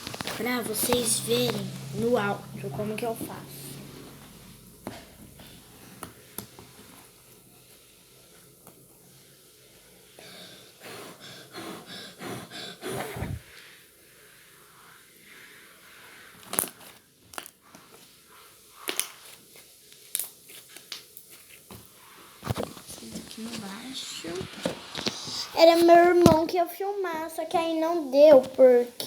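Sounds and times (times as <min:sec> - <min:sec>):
soft rustling and squishing: 0:15.4 - 0:26.5.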